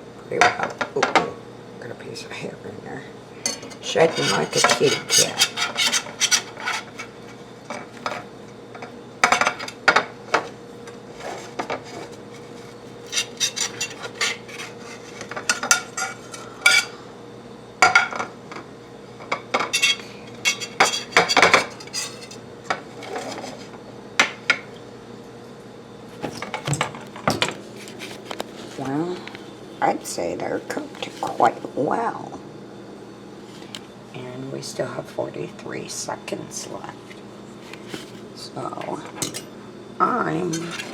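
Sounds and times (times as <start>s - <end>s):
utensil scraping on a plate: 3.5s - 7.4s, 11.1s - 17.0s, 19.6s - 23.7s.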